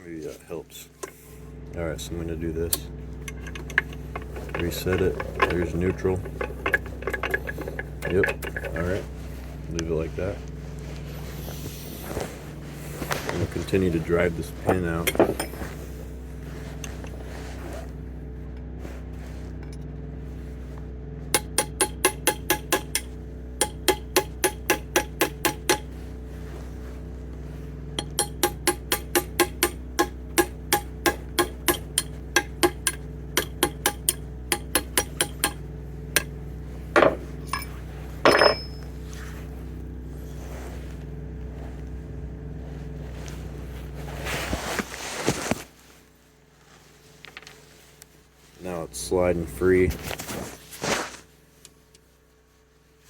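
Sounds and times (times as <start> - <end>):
low hum: 0.0 - 53.0
hammer tapping on metal punch: 21.4 - 25.9, 28.0 - 36.3, 38.3 - 38.8
brief rustling: 43.1 - 48.6, 49.8 - 51.4.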